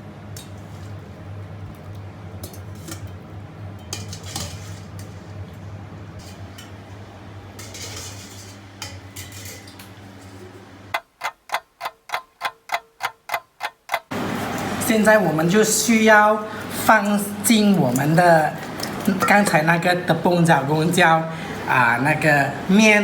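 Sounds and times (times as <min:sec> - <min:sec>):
steady low hum: 0:00.0 - 0:11.0
utensils and dishes clinking: 0:02.4 - 0:05.5, 0:07.6 - 0:10.6, 0:14.1 - 0:20.2
evenly spaced ticks: 0:11.0 - 0:14.1.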